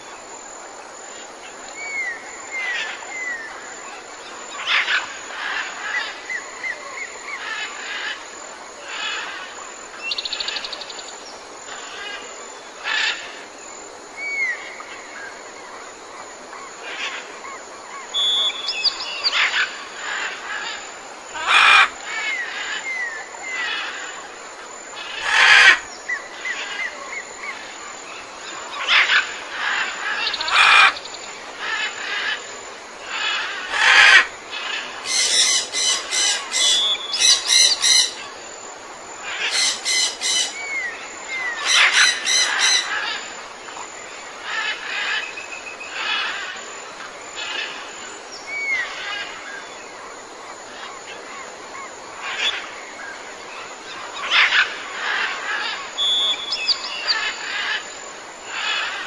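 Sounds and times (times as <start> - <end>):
birds calling: 16.7 - 24.4, 25.0 - 38.5, 39.2 - 46.8, 53.8 - 59.0
rough bird calls: 39.2 - 43.2.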